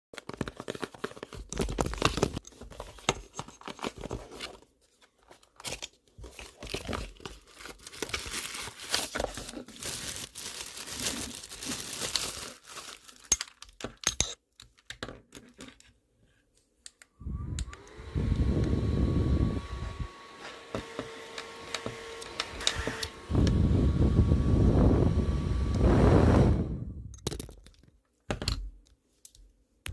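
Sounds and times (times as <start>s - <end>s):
packaging tearing and crinkling: 5.6s - 13.8s
electric fan humming: 17.2s - 27.1s.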